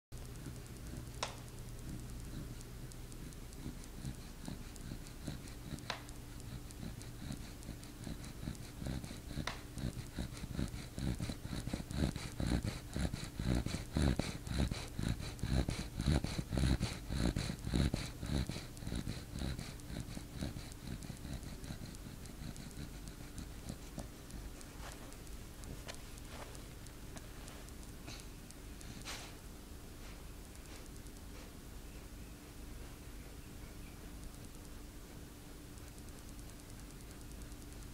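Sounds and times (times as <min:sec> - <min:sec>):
puppy snoring: 0:00.2 - 0:26.9.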